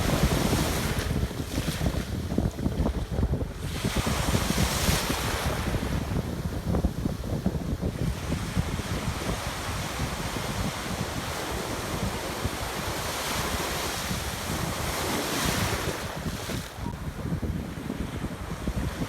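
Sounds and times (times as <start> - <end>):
surf breaking on sandy beach: 0.0 - 19.0
wind rumbling on microphone: 0.0 - 19.0.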